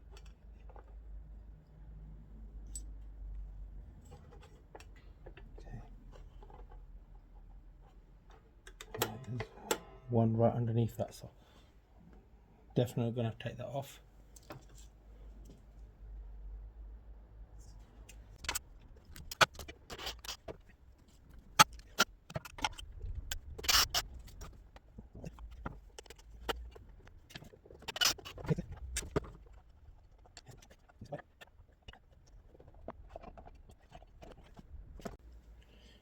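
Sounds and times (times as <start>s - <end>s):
tools and parts clicking: 8.3s - 10.1s, 18.0s - 20.7s, 21.3s - 31.6s.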